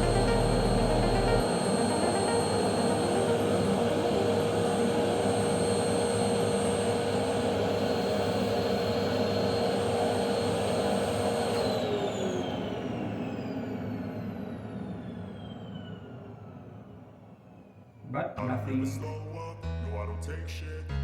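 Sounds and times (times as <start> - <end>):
motor whine winding down: 0.0 - 14.4.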